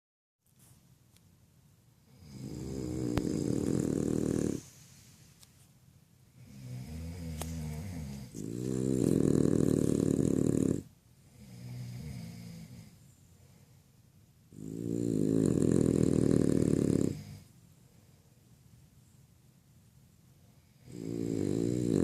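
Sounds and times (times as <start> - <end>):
dog snoring: 2.0 - 4.8, 6.4 - 13.0, 14.5 - 17.5, 20.6 - 22.0.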